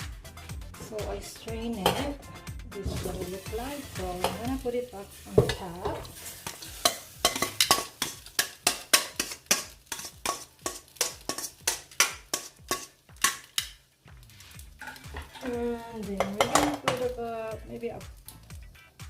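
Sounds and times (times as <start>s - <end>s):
utensil clinking against cookware: 1.8s - 2.1s, 5.3s - 13.7s, 14.8s - 17.2s.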